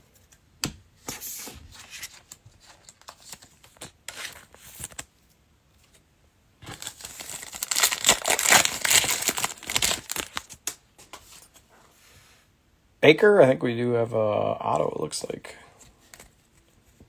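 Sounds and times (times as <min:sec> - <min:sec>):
plastic wrapper tearing and crinkling: 0:06.6 - 0:10.7.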